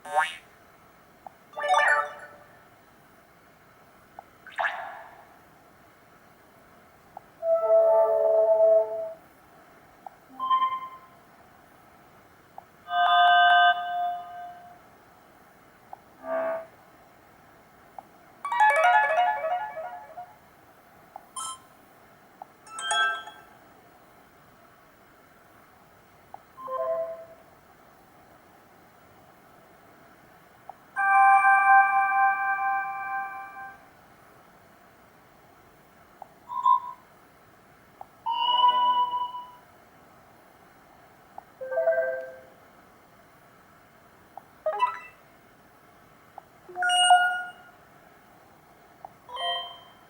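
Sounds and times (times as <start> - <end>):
phone ringtone: 1.6 - 2.4, 22.7 - 23.4.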